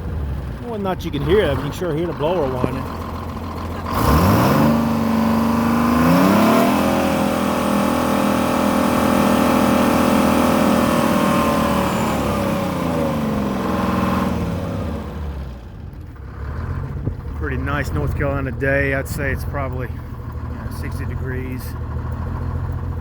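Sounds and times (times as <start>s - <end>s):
blower whining: 0.0s - 15.8s
diesel engine revving: 0.0s - 23.0s.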